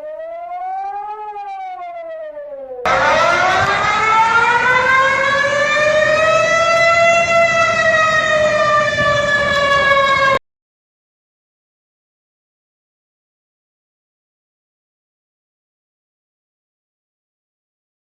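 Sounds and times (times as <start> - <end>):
warning siren wailing: 0.0 - 10.4.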